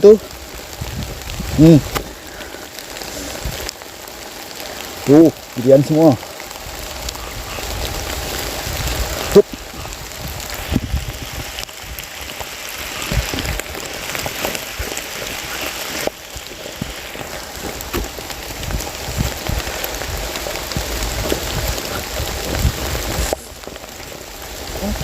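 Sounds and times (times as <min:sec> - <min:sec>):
rain pattering on leaves: 0:00.0 - 0:25.0.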